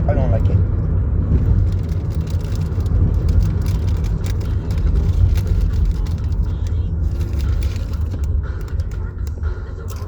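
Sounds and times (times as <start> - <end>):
steady low rumble: 0.0 - 10.0
faint crackles and clicks: 1.6 - 10.0.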